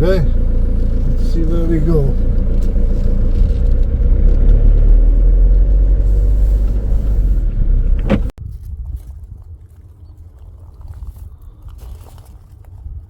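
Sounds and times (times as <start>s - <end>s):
van engine and road rumble: 0.0s - 8.4s.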